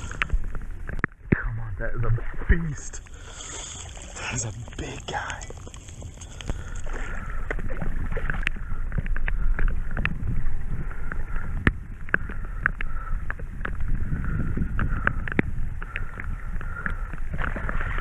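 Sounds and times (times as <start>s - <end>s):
water around kayak: 0.0s - 18.0s
wind rumbling on microphone: 4.0s - 18.0s.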